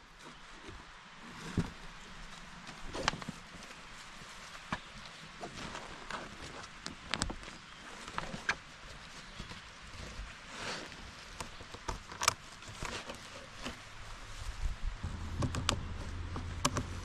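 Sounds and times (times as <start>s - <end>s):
rustling: 0.0s - 17.0s
light clicks and knocks: 15.0s - 17.0s.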